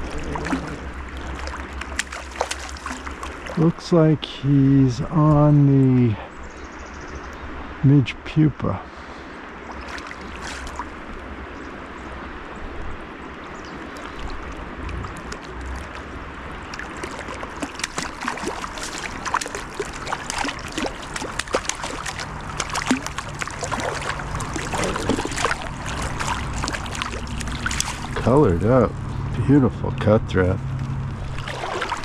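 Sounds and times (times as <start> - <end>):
low rumble: 0.0 - 2.0, 22.2 - 32.0
water splashes and trickles: 0.0 - 6.4, 7.1 - 32.0
river water running: 0.0 - 32.0.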